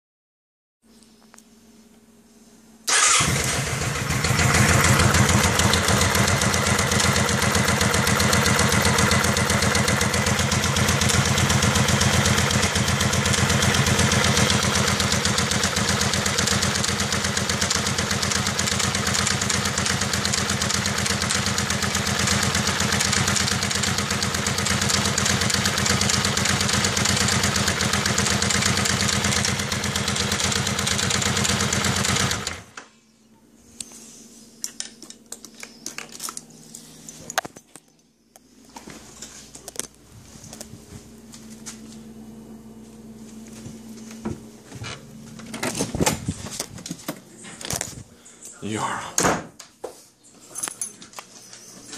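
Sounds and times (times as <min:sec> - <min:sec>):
motorcycle engine starting and idling: 0:02.8 - 0:32.9.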